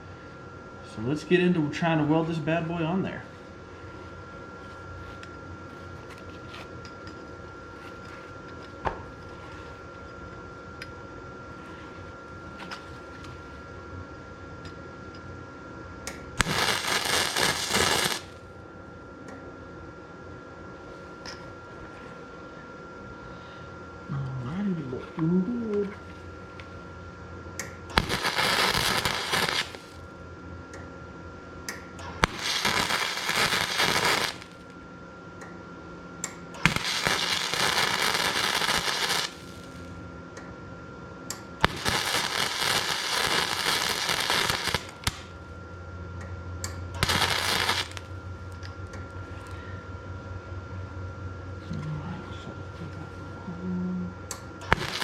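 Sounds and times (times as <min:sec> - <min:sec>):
low welder hum: 0:00.0 - 0:55.0
welding arc crackling: 0:16.1 - 0:18.4, 0:27.6 - 0:30.1, 0:32.0 - 0:34.7, 0:36.6 - 0:39.9, 0:41.6 - 0:45.5, 0:47.0 - 0:48.1, 0:54.6 - 0:55.0.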